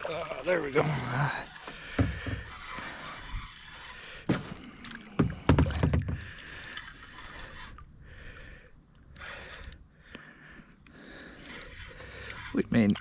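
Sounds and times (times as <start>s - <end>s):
water splashing: 0.0s - 8.0s, 11.8s - 13.0s
knocks on kayak hull: 5.2s - 6.3s
short metallic clinks: 9.2s - 9.9s.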